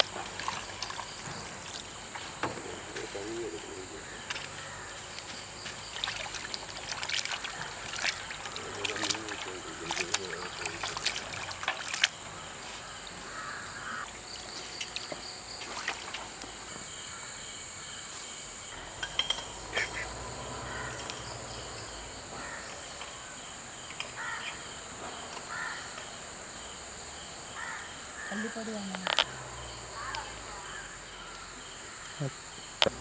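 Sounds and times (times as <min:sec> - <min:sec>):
crows cawing: 0:03.9 - 0:05.0, 0:13.2 - 0:14.1, 0:20.7 - 0:21.1, 0:22.4 - 0:22.8, 0:24.2 - 0:24.6, 0:25.5 - 0:26.0, 0:27.6 - 0:28.6, 0:30.0 - 0:32.1
high-pitched insect drone: 0:16.5 - 0:18.9.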